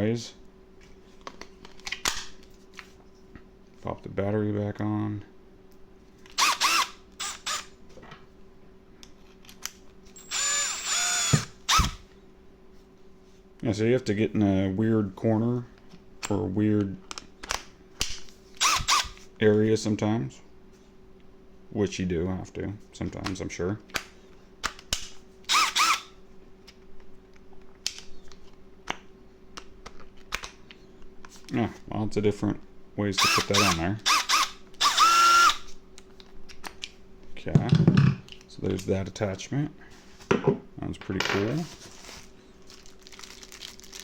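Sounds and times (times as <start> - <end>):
drill motor spinning up: 6.3 - 7.7, 10.2 - 12.0, 18.6 - 19.2, 25.5 - 26.1, 33.2 - 35.7.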